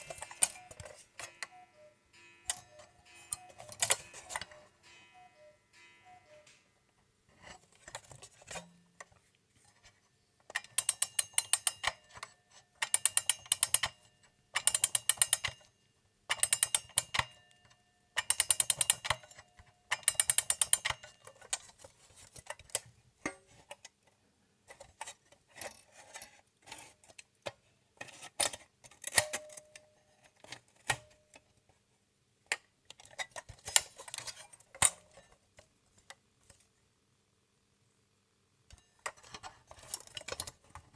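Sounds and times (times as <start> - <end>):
alarm clock bell ringing: 0.0 - 6.8
clockwork clicks and rattles: 10.5 - 12.2, 12.8 - 15.7, 16.3 - 17.4, 18.2 - 21.7.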